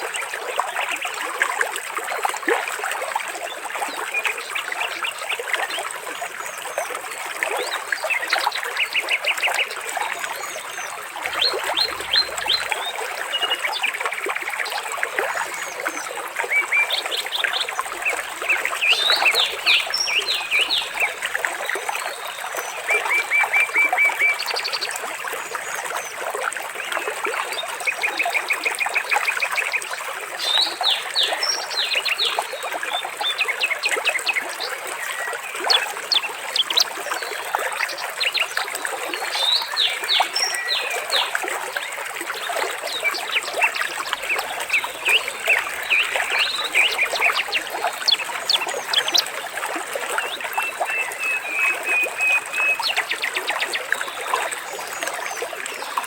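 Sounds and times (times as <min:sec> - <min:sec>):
water trickling: 0:00.0 - 0:56.0
birds chirping and trilling: 0:11.2 - 0:13.6, 0:17.3 - 0:21.3, 0:42.9 - 0:49.5.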